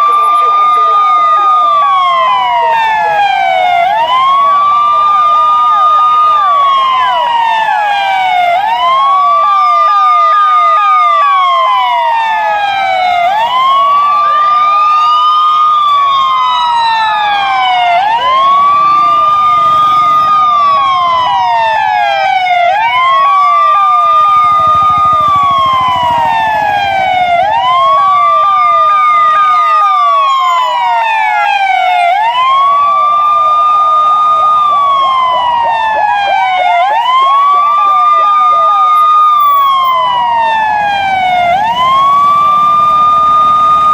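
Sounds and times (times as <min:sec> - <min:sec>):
police siren wailing: 0:00.0 - 0:43.9.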